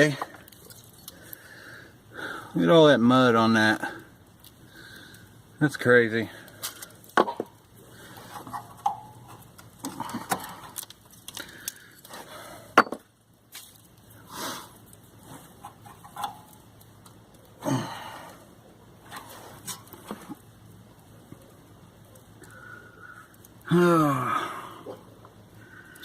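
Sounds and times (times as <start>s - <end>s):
person breathing heavily: 1.1s - 2.6s, 11.4s - 12.8s, 22.4s - 26.0s
hand tools clicking and scraping: 6.6s - 17.2s, 19.0s - 20.4s.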